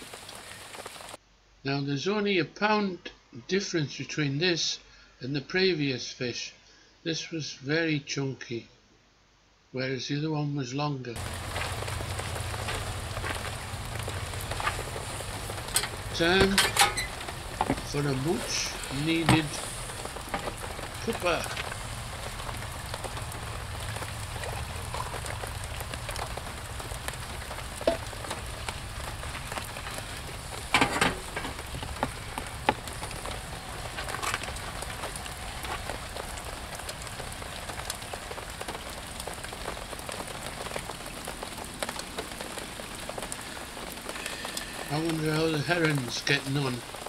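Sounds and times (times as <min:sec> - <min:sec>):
steady rain pattering: 0:00.0 - 0:01.3, 0:11.2 - 0:47.0
knocks and clatters: 0:11.2 - 0:18.0, 0:27.8 - 0:35.9.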